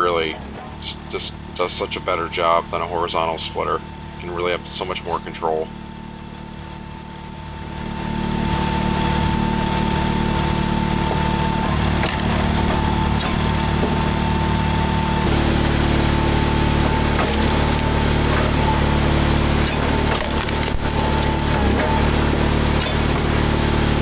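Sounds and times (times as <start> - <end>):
log splitter engine whining: 0.0 - 24.0
wood splitting cracks: 12.0 - 13.4, 17.2 - 18.0, 19.6 - 22.1.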